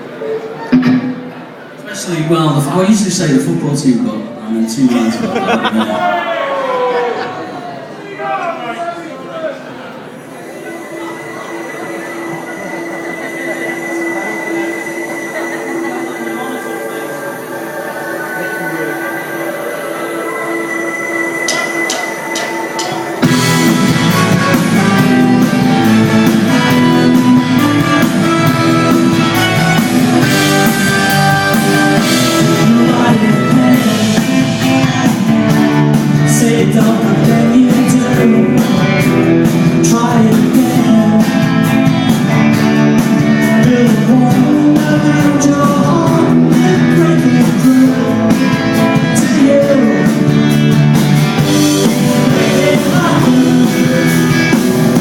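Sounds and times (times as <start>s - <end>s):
live rock band playing: 0.1s - 1.8s, 10.1s - 55.0s
person singing: 10.8s - 50.6s, 51.4s - 55.0s.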